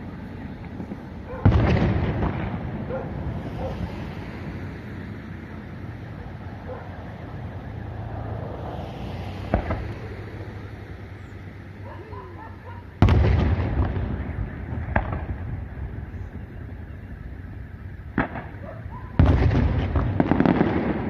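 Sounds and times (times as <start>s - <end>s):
fireworks bursting: 0.0s - 11.1s, 12.8s - 21.0s.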